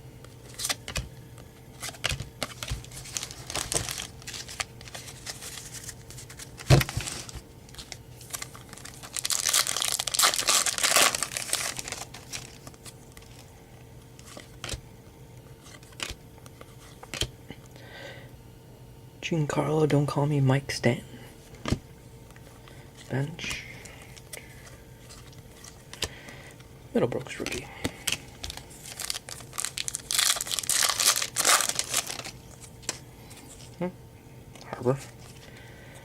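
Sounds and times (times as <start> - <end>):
cards being handled: 0.2 - 14.8, 15.6 - 17.3, 22.4 - 26.4, 27.2 - 33.8
wrapper tearing and crinkling: 1.8 - 13.5, 27.4 - 33.0.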